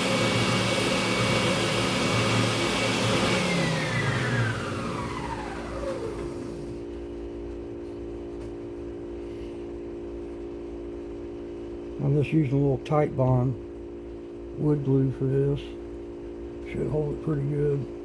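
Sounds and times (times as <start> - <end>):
power tool motor winding down: 0.0 - 6.8.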